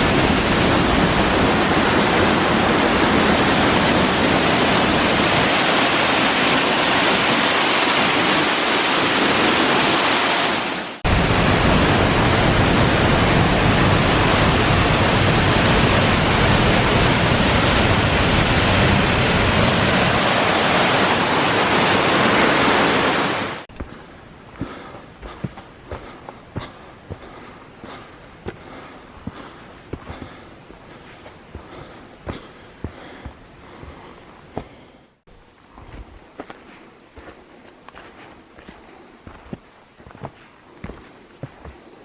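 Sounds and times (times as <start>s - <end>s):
cascading water rushing: 0.0s - 23.7s.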